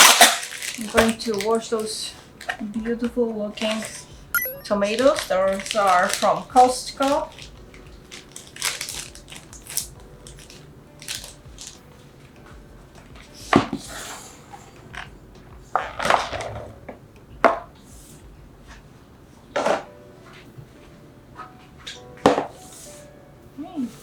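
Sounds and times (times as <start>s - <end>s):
produce rustling: 0.0s - 2.2s, 4.8s - 11.8s.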